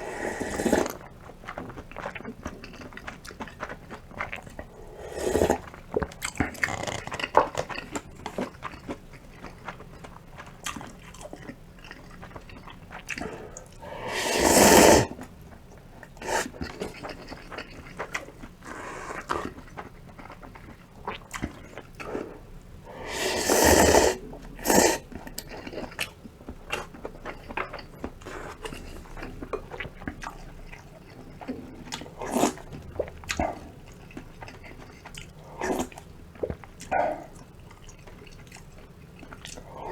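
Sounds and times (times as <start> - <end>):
slurping noodles: 0.0 - 1.3, 2.1 - 8.0, 13.0 - 15.3, 16.0 - 19.8, 21.4 - 26.0, 26.8 - 33.9
chewing: 0.0 - 39.9.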